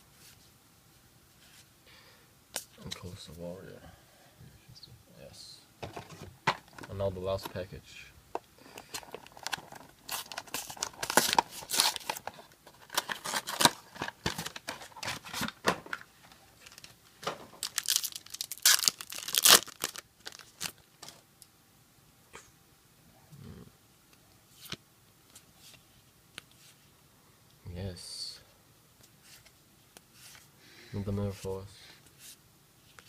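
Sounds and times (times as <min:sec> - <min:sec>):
wrapper tearing and crinkling: 0:08.9 - 0:15.6, 0:16.6 - 0:20.9.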